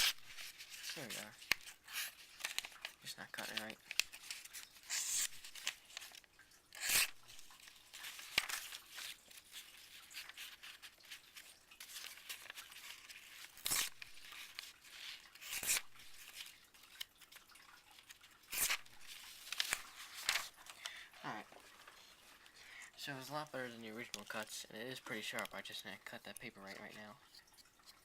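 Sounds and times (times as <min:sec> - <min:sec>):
knife slicing paper: 0:00.0 - 0:17.1, 0:18.4 - 0:20.7
paper rustling and tearing: 0:00.0 - 0:27.0.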